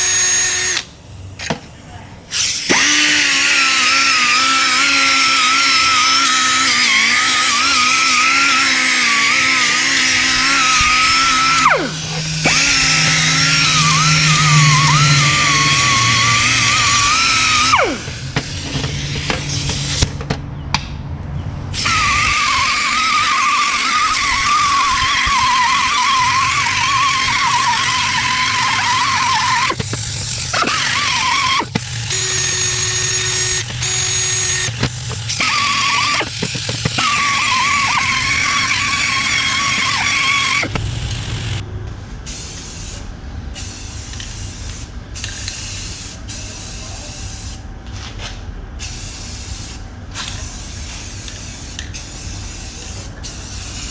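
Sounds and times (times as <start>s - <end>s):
power tool motor whining: 0.0s - 0.9s, 2.3s - 20.3s, 21.7s - 41.6s.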